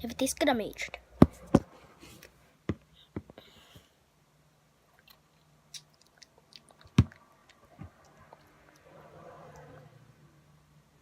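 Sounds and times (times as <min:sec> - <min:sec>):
wet chewing mouth sounds: 0:04.9 - 0:08.9.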